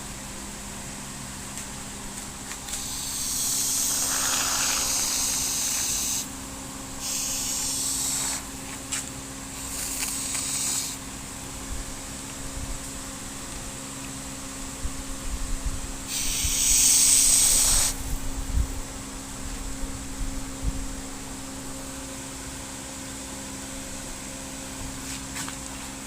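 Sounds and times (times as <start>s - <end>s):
spray foam can hissing: 2.7s - 6.3s, 7.0s - 8.5s, 9.6s - 11.0s, 16.1s - 18.1s.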